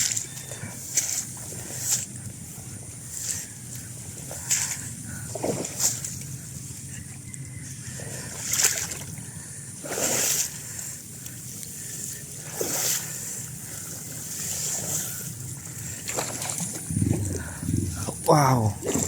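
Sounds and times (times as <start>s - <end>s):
steady low hum: 0.0s - 19.0s
water splashing and sloshing: 0.0s - 19.0s.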